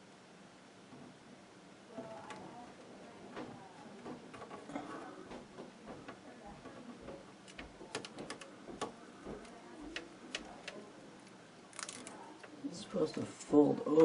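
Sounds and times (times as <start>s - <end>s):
plastic parts clicking: 11.7s - 12.2s.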